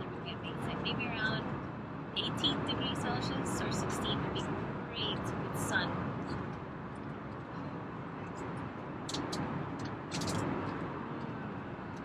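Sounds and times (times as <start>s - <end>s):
airliner cabin roar: 0.0s - 12.0s
faint high clicks: 9.1s - 11.3s.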